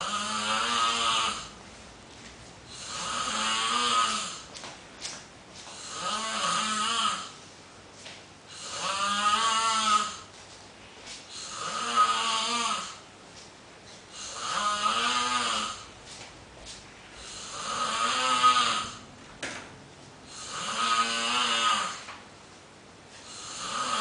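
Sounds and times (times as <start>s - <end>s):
person snoring loudly: 0.0s - 1.5s, 2.7s - 4.5s, 5.8s - 7.4s, 8.5s - 10.3s, 11.3s - 13.0s, 14.2s - 15.9s, 17.2s - 19.1s, 20.3s - 22.0s, 23.2s - 24.0s.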